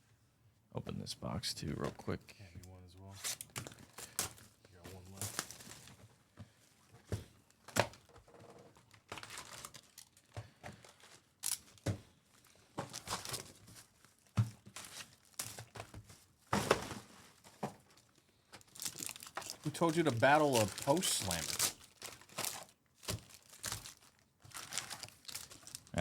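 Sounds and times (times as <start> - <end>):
foil wrappers tearing and crinkling: 5.1 - 5.9, 9.0 - 16.0, 17.8 - 25.9.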